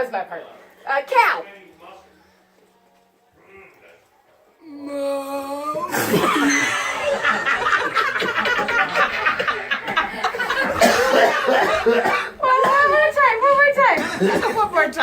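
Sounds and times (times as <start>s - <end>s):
group of people laughing: 5.9s - 12.4s.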